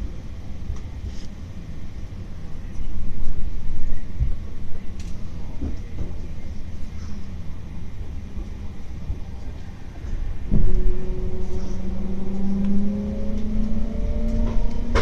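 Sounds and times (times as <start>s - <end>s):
train rumbling in tunnel: 0.0s - 15.0s
train motor humming tone: 8.4s - 15.0s.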